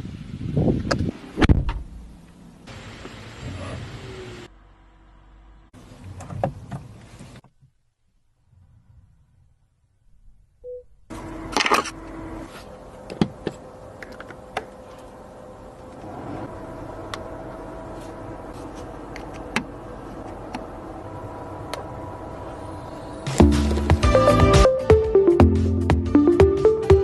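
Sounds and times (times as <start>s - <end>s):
steady hiss: 2.2s - 4.5s
faint held electronic tones: 10.6s - 11.0s.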